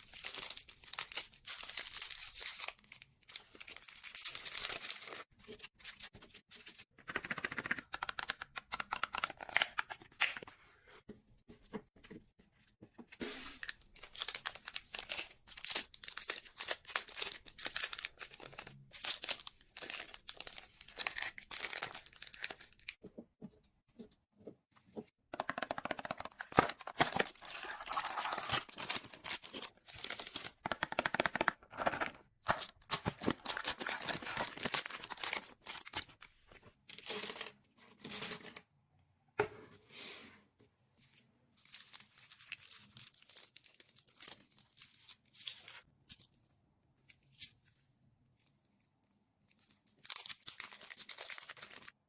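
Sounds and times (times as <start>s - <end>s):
candy wrappers crinkling and tearing: 0.0s - 5.3s, 13.6s - 23.0s, 25.4s - 36.3s, 41.6s - 46.4s, 49.5s - 52.0s.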